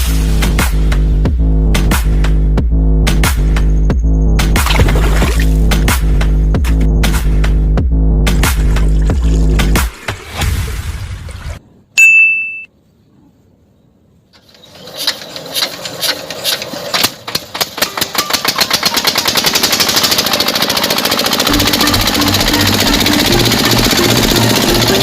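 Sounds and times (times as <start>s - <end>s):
short ding: 12.0s - 12.7s.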